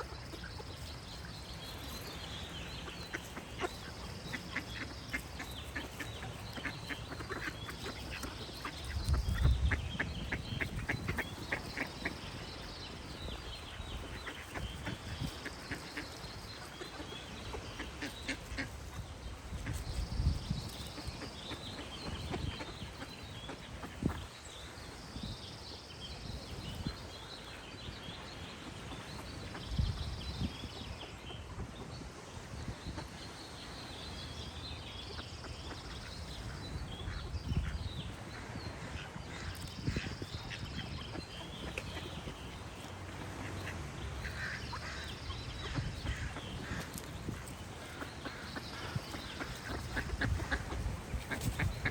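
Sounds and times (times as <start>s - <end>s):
ducks quacking: 0.0s - 24.4s, 35.2s - 51.9s
small songbirds chirping: 0.0s - 51.9s.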